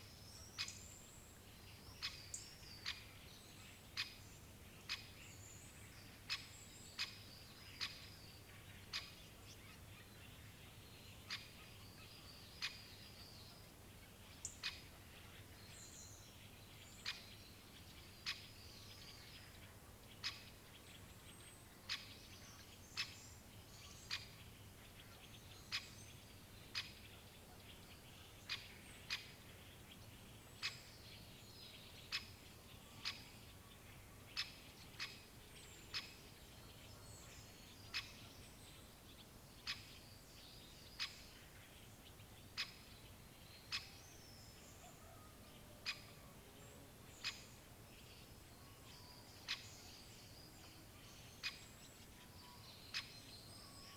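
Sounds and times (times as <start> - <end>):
birds chirping faintly: 0.0 - 53.9
woodpecker sharp kik calls: 43.7 - 44.0.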